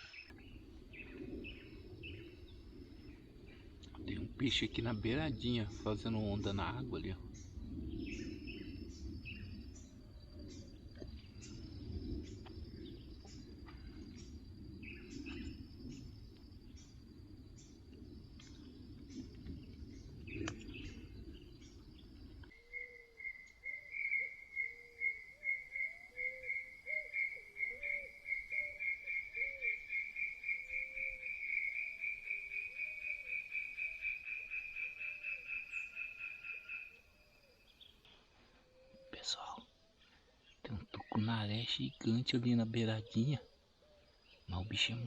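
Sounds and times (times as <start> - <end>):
insect chirps: 0.0 - 45.0
low rumble: 0.1 - 22.5
low frog calls: 20.3 - 37.8.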